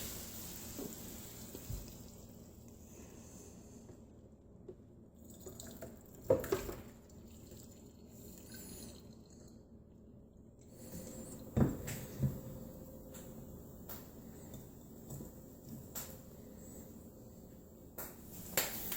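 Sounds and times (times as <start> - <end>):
dripping: 5.2 - 9.5.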